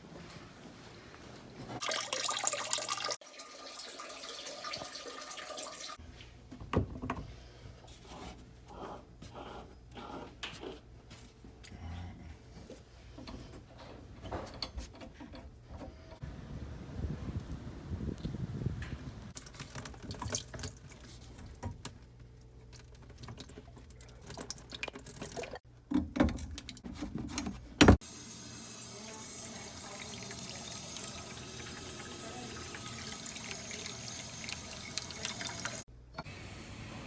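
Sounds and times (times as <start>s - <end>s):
water running from a tap: 1.8s - 6.0s, 28.0s - 35.9s.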